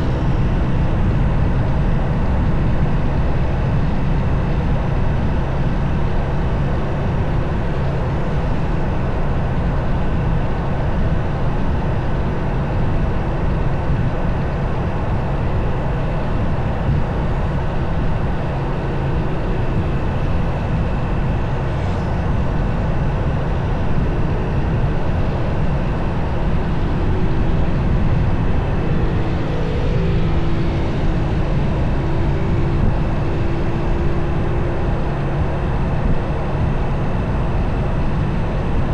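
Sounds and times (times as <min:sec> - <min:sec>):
road and wind noise: 0:00.0 - 0:38.9
motorcycle engine running: 0:16.4 - 0:38.4.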